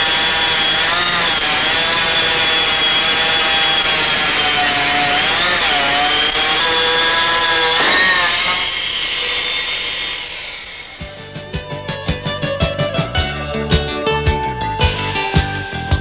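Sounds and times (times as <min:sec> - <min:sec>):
stone saw grinding whine: 0:00.0 - 0:11.5
music: 0:11.0 - 0:16.0.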